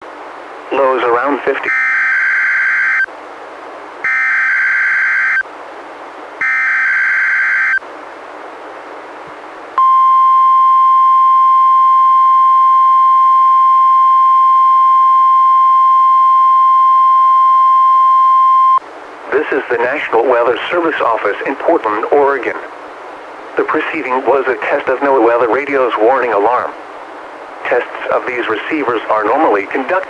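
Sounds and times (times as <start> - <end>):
steady warning alarm tone: 1.6 - 3.1, 4.0 - 5.4, 6.4 - 7.8
buzzy data bursts: 6.4 - 7.8.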